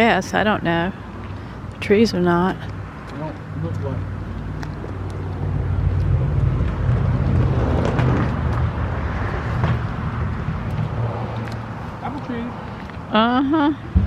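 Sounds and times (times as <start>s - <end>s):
vehicle passing by: 2.8s - 13.2s.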